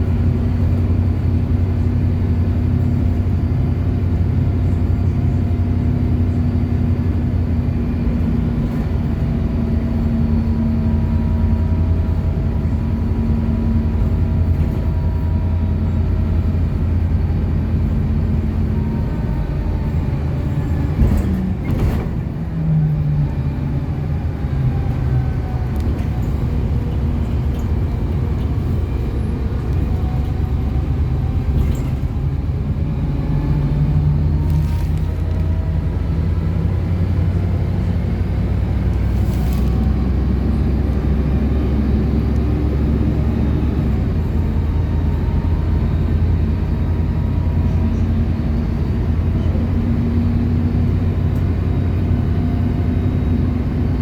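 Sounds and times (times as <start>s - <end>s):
bus engine drone: 0.0s - 54.0s
road noise: 0.0s - 54.0s.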